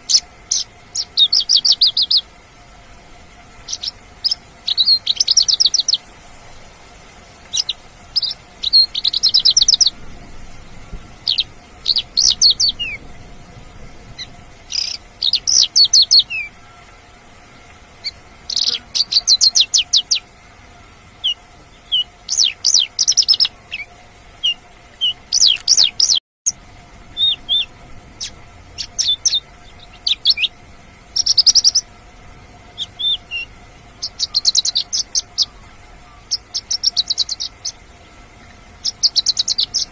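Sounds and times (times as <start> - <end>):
lark chirping trills: 0.0 - 2.3, 3.6 - 6.1, 7.4 - 10.0, 11.2 - 13.1, 14.2 - 16.9, 18.0 - 20.2, 21.2 - 26.2, 27.1 - 31.9, 32.7 - 37.8, 38.8 - 39.9
faint steady hum: 0.0 - 39.9.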